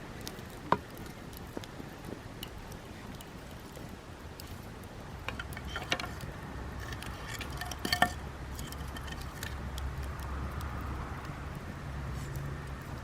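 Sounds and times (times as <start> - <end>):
campfire crackling: 0.0 - 13.0
camp cookware clinking: 5.2 - 9.7.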